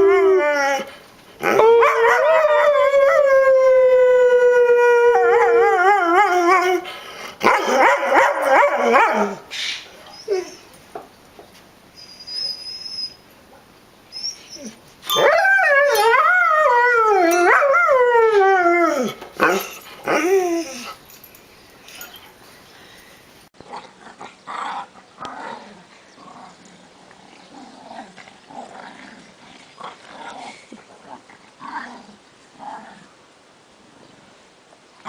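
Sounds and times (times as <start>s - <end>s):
dog howling: 0.0s - 9.5s, 14.5s - 21.0s
dog yelping: 14.2s - 18.0s.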